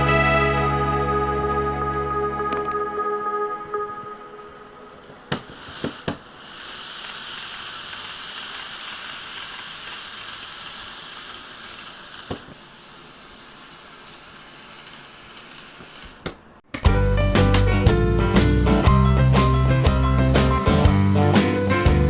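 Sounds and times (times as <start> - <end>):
model train running on track: 5.2 - 16.1, 18.1 - 22.0.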